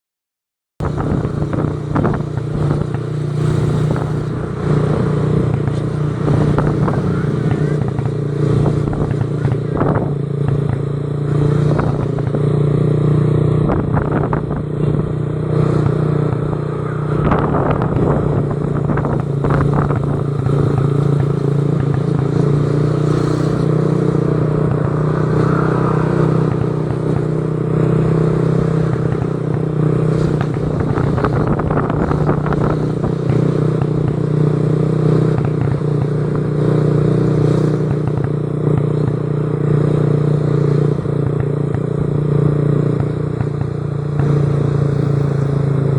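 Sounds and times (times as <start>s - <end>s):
motor humming: 0.8s - 34.5s.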